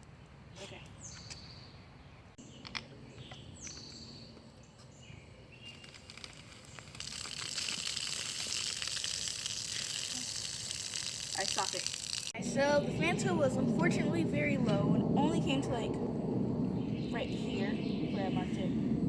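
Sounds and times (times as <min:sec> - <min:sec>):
bird chirps: 0:00.5 - 0:06.1, 0:16.7 - 0:18.7
soda fizzing and hissing: 0:06.0 - 0:12.4.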